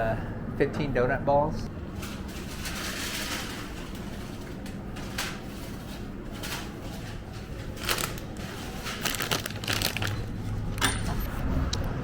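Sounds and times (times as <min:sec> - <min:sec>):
low background hum: 0:00.0 - 0:12.0
rustling and clattering: 0:01.9 - 0:11.4.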